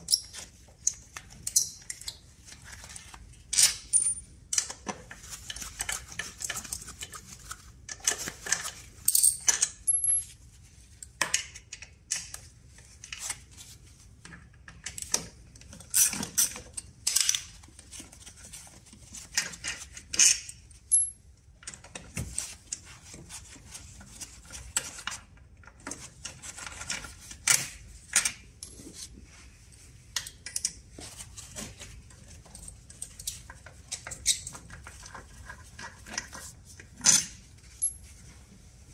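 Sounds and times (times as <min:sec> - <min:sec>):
metal tools and bolts clinking: 0:03.5 - 0:04.7, 0:08.4 - 0:10.3.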